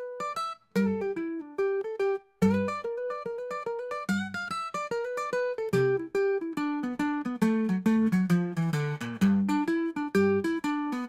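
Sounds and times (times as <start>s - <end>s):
plucked string melody: 0.0s - 11.0s.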